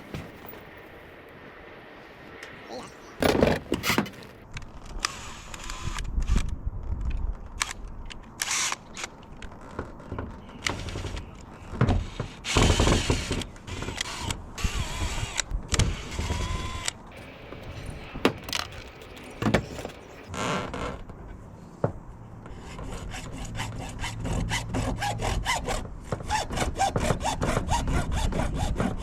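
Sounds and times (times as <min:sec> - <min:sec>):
scraping on tin roof: 0:15.9 - 0:21.4.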